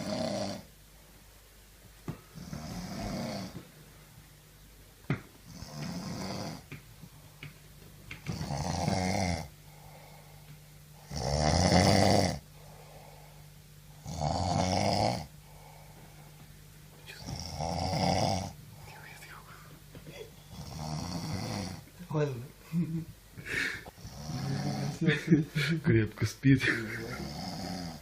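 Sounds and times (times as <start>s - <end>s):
man snoring: 0.0s - 0.7s, 2.4s - 3.6s, 5.5s - 6.6s, 8.3s - 10.2s, 11.0s - 12.4s, 14.0s - 15.7s, 17.1s - 19.4s, 20.4s - 21.8s, 23.5s - 25.1s, 26.9s - 28.0s.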